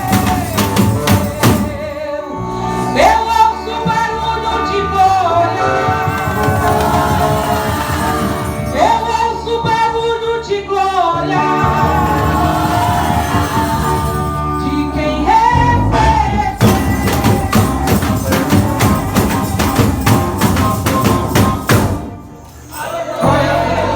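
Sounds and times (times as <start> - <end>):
percussion beat: 0.0 - 2.0, 5.6 - 9.9, 11.6 - 23.9
worship band music with singing: 0.0 - 23.9.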